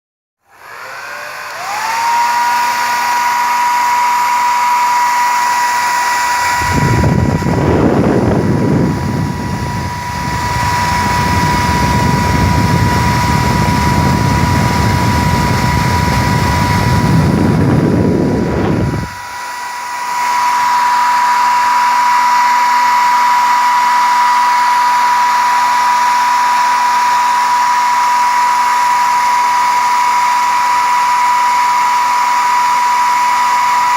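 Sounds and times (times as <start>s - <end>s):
hair dryer whining: 0.4s - 33.9s.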